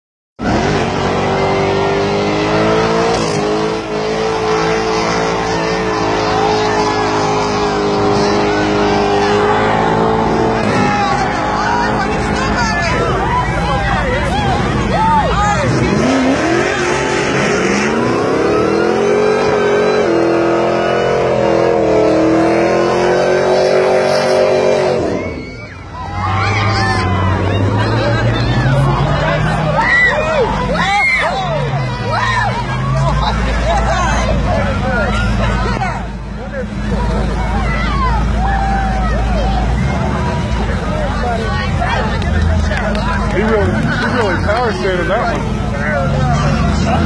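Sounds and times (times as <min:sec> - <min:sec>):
car engine at high revs: 0:00.4 - 0:47.0.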